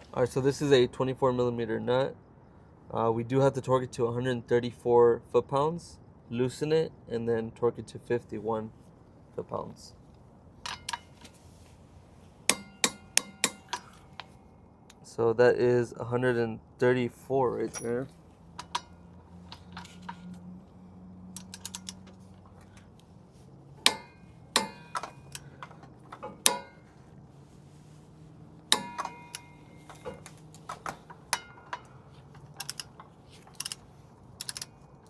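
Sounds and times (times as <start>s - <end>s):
metal tools clinking: 10.6s - 11.3s, 12.5s - 14.4s, 17.6s - 20.3s, 21.4s - 22.9s, 23.8s - 27.1s, 28.7s - 34.8s
ratchet clicking: 21.3s - 22.8s, 28.7s - 33.8s, 34.4s - 34.8s.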